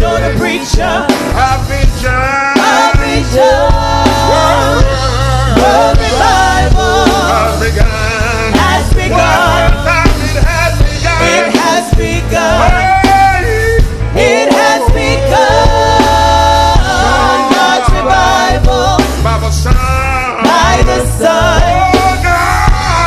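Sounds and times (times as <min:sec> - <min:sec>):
bass and drum beat: 0:00.0 - 0:23.0
gospel singing: 0:00.0 - 0:23.0.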